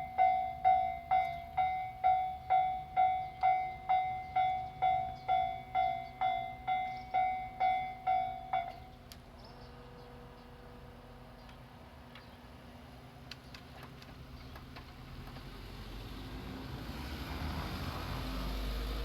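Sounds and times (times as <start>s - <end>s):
level crossing warning bell ringing: 0.0s - 9.0s.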